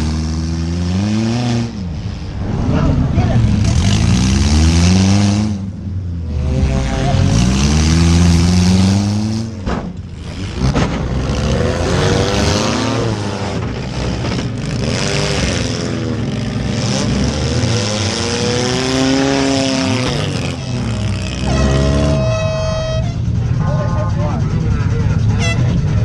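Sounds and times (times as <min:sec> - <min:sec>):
car engine revving: 0:00.0 - 0:26.0
heavy mechanical noise: 0:18.2 - 0:26.0.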